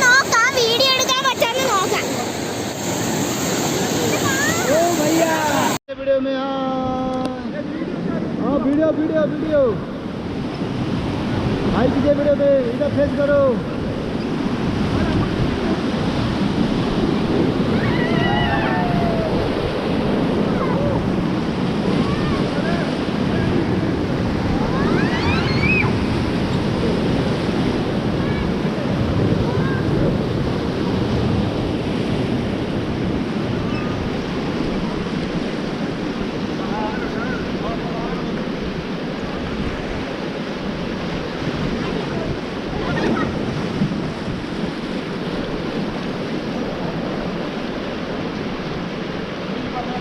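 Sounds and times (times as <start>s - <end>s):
river water rushing and splashing: 0.0s - 5.8s, 7.4s - 50.0s
wind noise on microphone: 6.6s - 50.0s.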